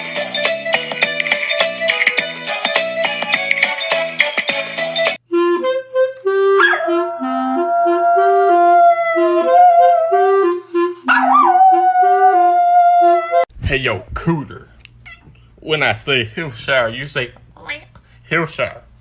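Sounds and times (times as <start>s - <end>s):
instrument melody: 5.2s - 13.4s
dog howling: 6.6s - 10.4s, 11.1s - 13.5s.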